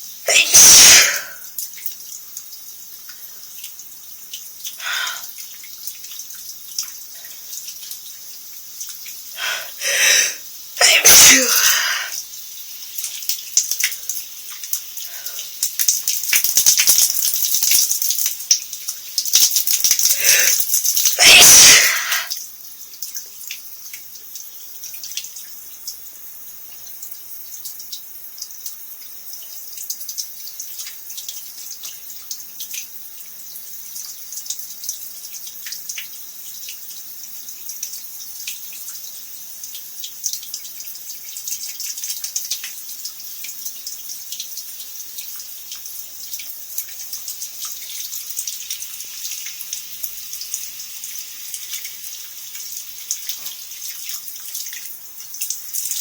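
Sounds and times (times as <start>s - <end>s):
drips and splashes: 0.0s - 56.0s
person sneezing: 0.3s - 1.4s, 4.8s - 5.2s, 9.4s - 12.2s, 20.1s - 20.6s, 21.2s - 22.3s
shower spray hissing: 0.3s - 1.4s, 4.8s - 5.3s, 9.3s - 12.2s, 19.4s - 22.4s.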